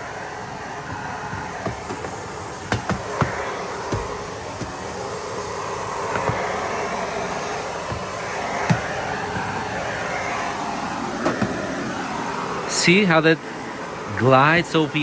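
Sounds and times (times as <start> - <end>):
vacuum cleaner running: 0.0 - 12.8
vacuum head knocks: 0.7 - 10.3, 11.2 - 11.9.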